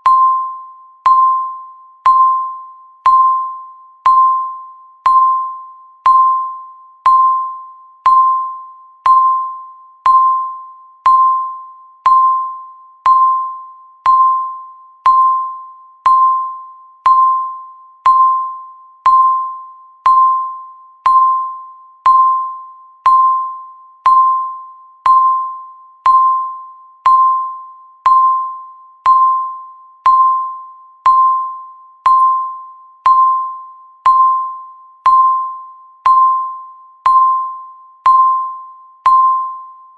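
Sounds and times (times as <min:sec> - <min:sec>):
electronic timer ding: 0:00.0 - 0:39.9.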